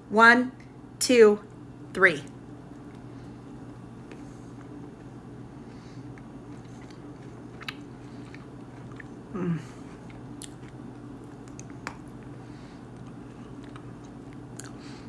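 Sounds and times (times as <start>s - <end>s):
chewing chocolate: 6.0s - 14.8s.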